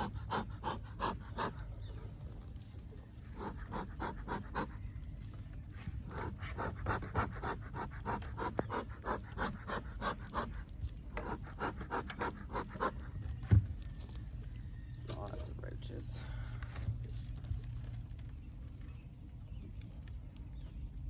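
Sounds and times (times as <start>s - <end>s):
rapid panting: 0.0s - 1.7s, 3.3s - 4.8s, 6.1s - 13.2s.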